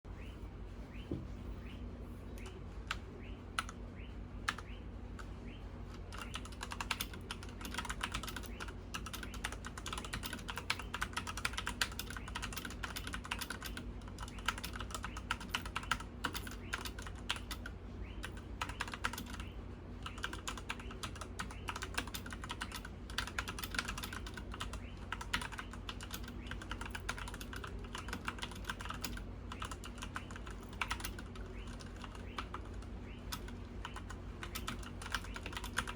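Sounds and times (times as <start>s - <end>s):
steady low hum: 0.0s - 35.9s
mechanical keyboard typing: 5.9s - 35.9s.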